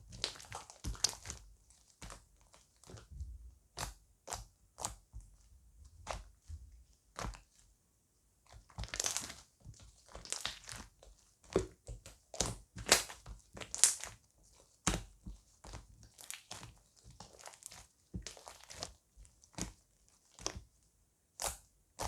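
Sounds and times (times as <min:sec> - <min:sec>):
slime squelching: 0:00.0 - 0:03.1, 0:08.6 - 0:20.7.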